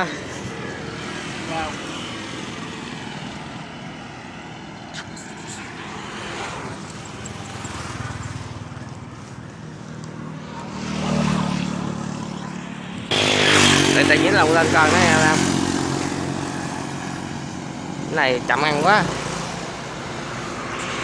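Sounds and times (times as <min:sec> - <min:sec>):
engine running: 0:05.0 - 0:21.0.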